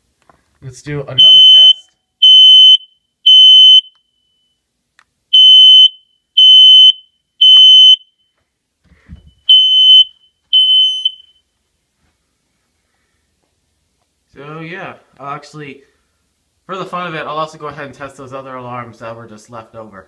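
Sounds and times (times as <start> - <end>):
smoke alarm beeping: 1.2 - 4.6, 5.3 - 8.4, 9.3 - 11.6.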